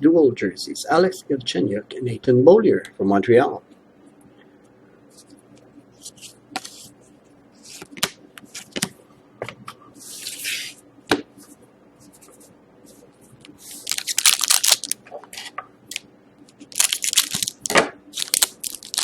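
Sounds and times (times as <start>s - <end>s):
cards rustling and sliding: 6.0s - 7.0s, 10.0s - 10.8s, 11.5s - 15.5s.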